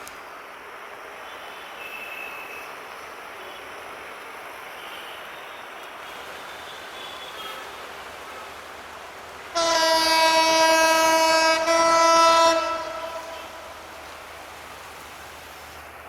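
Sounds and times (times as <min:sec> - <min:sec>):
heavy rain hissing: 0:00.0 - 0:16.0
locomotive air horn blasts: 0:09.4 - 0:14.4.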